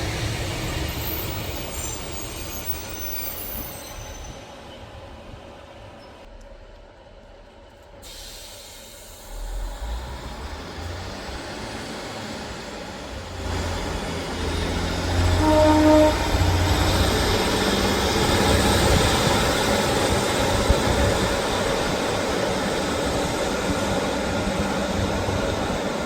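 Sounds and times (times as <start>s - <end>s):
train running through station: 0.0s - 26.0s
train horn note: 15.1s - 17.0s.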